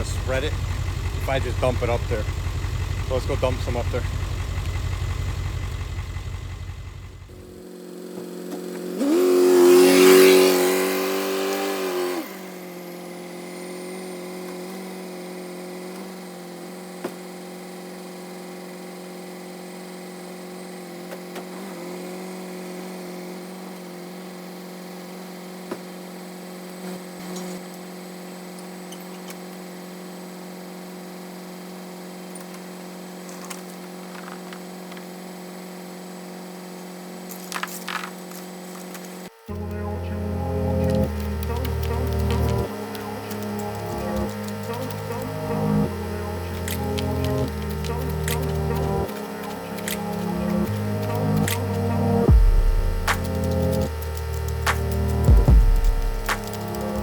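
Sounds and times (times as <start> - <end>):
diesel truck engine revving: 0.0 - 7.7, 8.8 - 13.0, 39.5 - 57.0.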